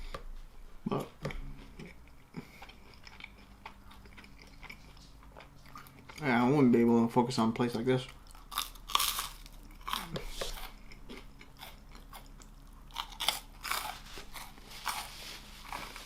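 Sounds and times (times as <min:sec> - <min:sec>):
crunchy chewing: 0:01.7 - 0:06.9, 0:07.7 - 0:16.0.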